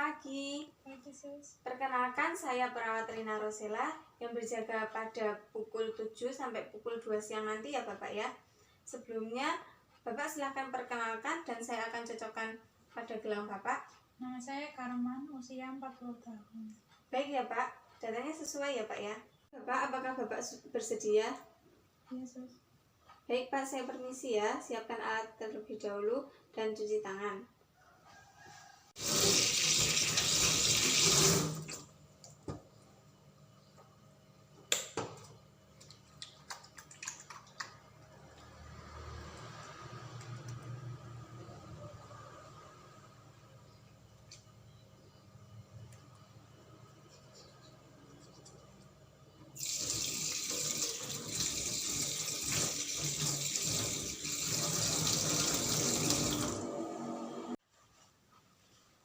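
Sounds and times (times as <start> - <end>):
tap water running into sink: 29.0 - 31.9, 49.6 - 56.6.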